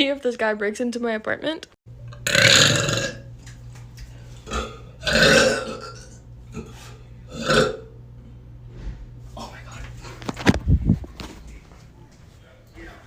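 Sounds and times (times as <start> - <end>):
person burping loudly: 2.1 - 3.3, 4.5 - 6.7, 7.3 - 8.0.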